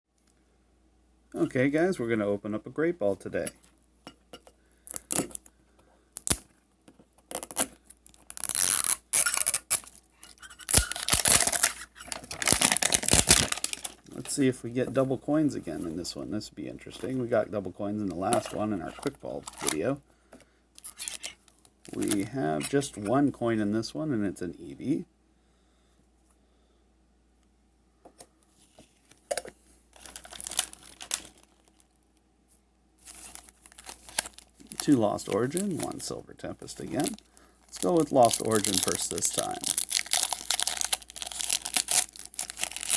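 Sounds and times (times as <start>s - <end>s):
plastic wrap tearing and rustling: 7.3s - 14.4s, 18.2s - 19.9s, 20.8s - 22.8s, 29.9s - 32.0s, 33.0s - 42.9s
plastic packaging crinkling: 7.3s - 15.1s, 18.0s - 20.0s, 20.8s - 22.8s, 28.8s - 32.0s, 33.0s - 42.9s.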